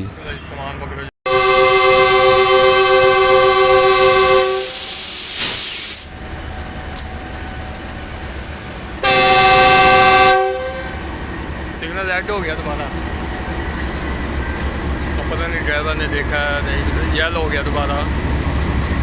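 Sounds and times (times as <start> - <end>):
locomotive horn blasts: 1.3 - 5.0, 9.0 - 11.0
locomotive engine low rumble: 6.1 - 19.0.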